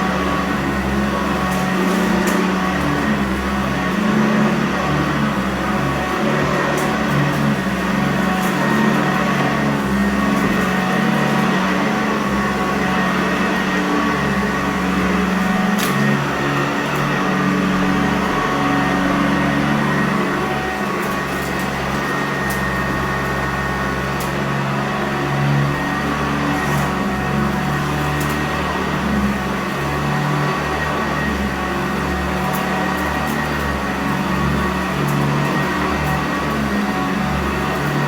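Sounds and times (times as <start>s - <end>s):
vacuum cleaner running on carpet: 0.0s - 38.0s.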